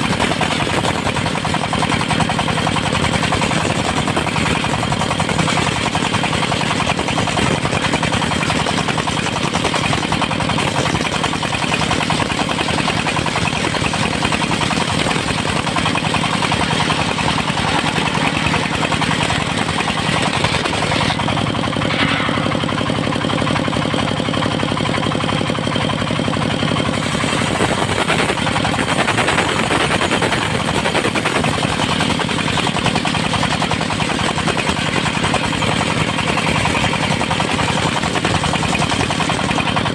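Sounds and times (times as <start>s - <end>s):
saw cutting wood: 0.0s - 23.8s, 26.9s - 34.5s
engine knocking: 0.0s - 39.9s.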